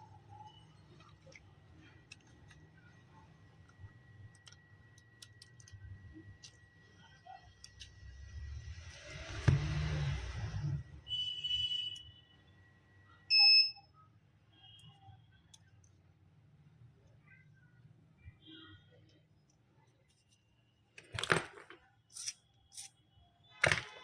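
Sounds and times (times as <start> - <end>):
small tools clicking and tapping: 3.6 - 6.8.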